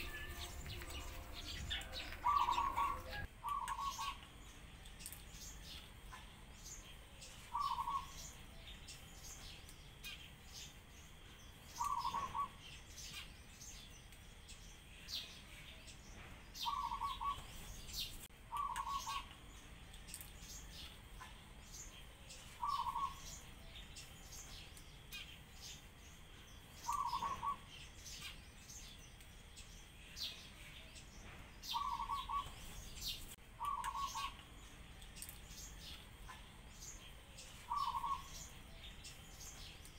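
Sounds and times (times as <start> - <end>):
sparrows chirping: 0.0 - 39.9
dove cooing: 1.7 - 4.2.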